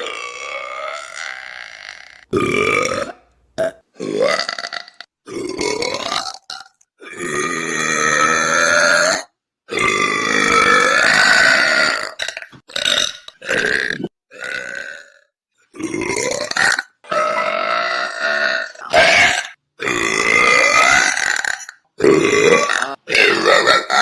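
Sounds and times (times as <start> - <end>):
woman belching: 0.0 - 6.5, 15.8 - 24.0.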